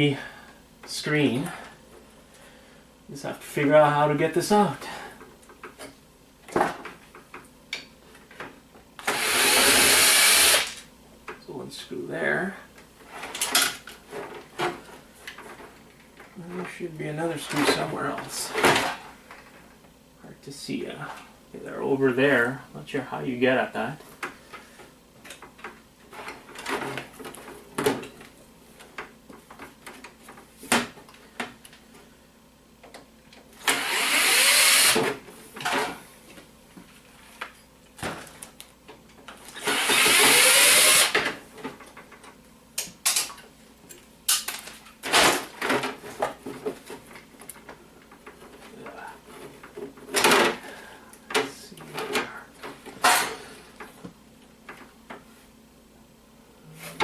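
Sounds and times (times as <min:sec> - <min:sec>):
power driver whirring: 0:09.0 - 0:10.8, 0:33.6 - 0:35.2, 0:39.5 - 0:41.2.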